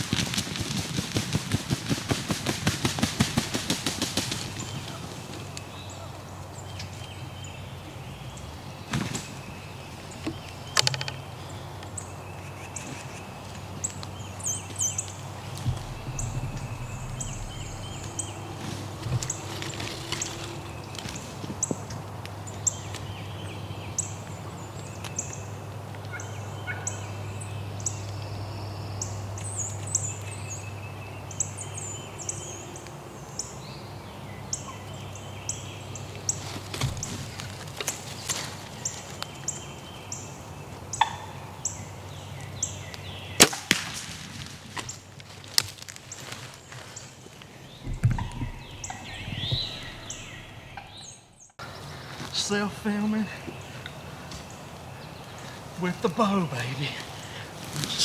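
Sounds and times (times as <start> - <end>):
low hum: 15.4 - 21.2, 47.8 - 51.6
turkey gobbling: 41.0 - 41.4, 47.9 - 51.4.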